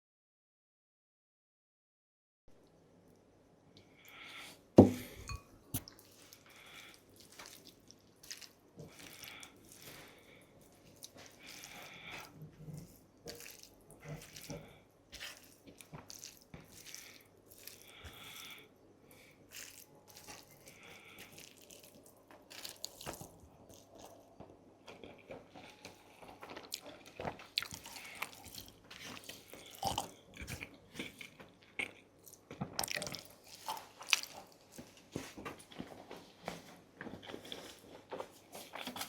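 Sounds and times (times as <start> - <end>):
sharp knock: 4.8 - 5.0
wet mouth eating sounds: 5.0 - 18.7, 19.4 - 24.3, 24.9 - 34.9.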